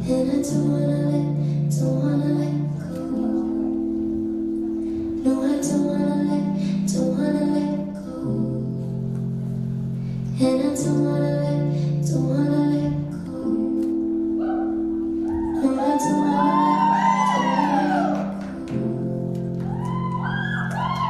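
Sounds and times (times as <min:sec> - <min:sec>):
slow ballad with held chords: 0:00.0 - 0:21.0
gliding vocal-like notes: 0:10.4 - 0:19.2.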